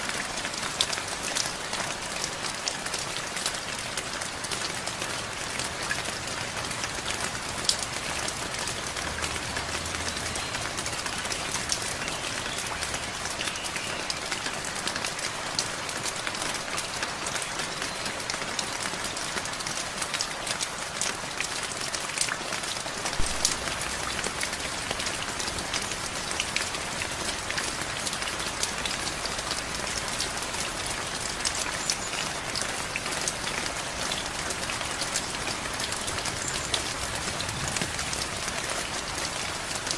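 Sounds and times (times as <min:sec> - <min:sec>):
steady rain hiss: 0:00.0 - 0:18.7, 0:19.3 - 0:39.9
raindrops ticking: 0:00.0 - 0:39.9.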